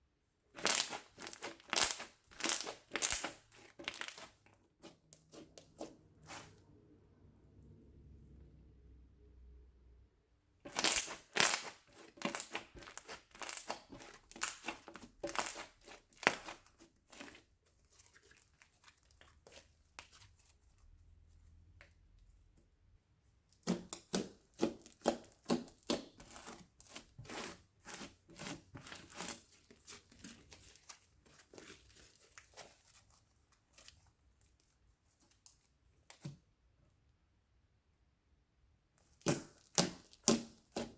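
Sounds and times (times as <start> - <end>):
slime crackling and popping: 0.6 - 4.4, 10.7 - 20.2, 39.0 - 40.9.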